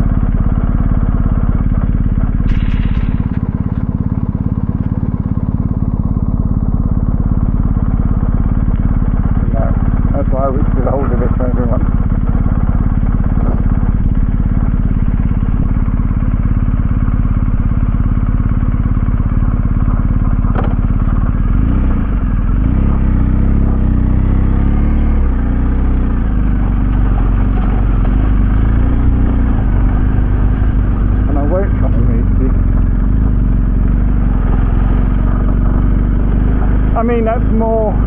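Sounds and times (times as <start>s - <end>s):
motorcycle engine running: 0.0s - 38.0s
sharp click: 2.5s - 3.9s.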